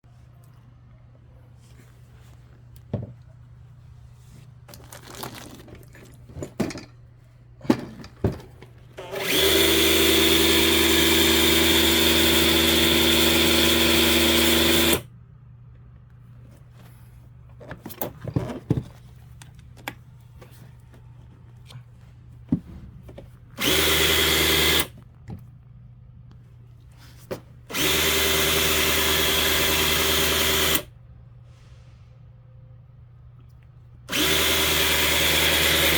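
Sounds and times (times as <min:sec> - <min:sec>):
clicks and handling knocks: 0:04.7 - 0:08.9
electric motor running: 0:09.0 - 0:15.1, 0:23.6 - 0:24.9, 0:27.7 - 0:30.9, 0:34.1 - 0:35.9.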